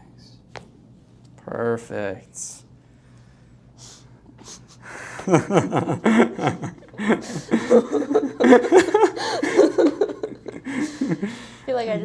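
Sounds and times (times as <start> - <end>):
person chuckling: 4.4 - 11.6.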